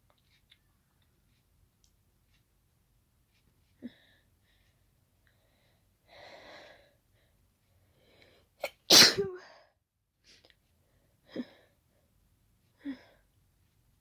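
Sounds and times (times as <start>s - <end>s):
quiet breaths: 0.0s - 8.6s, 9.4s - 14.0s
woman sneezing: 8.6s - 9.5s.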